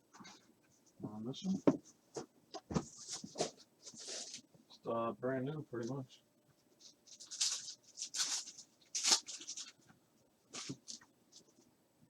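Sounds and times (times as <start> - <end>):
wrapper crinkling and tearing: 7.1 - 9.8.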